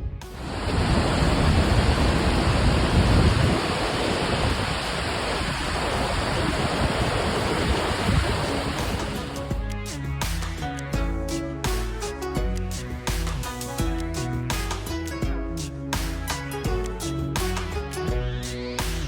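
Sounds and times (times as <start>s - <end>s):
wind buffeting microphone: 0.0s - 9.5s
waterfall crashing: 0.4s - 9.5s.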